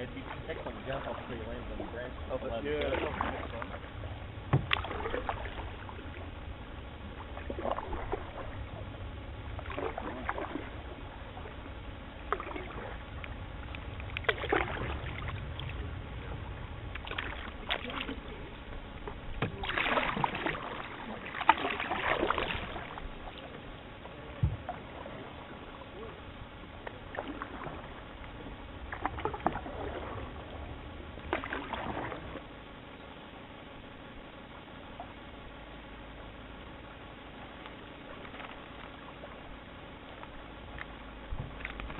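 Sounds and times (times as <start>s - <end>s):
paddle strokes splashing water: 0.0s - 32.6s
low steady rumble: 0.0s - 41.9s
paddle knocks: 4.5s - 5.4s, 19.0s - 20.5s, 24.4s - 24.8s.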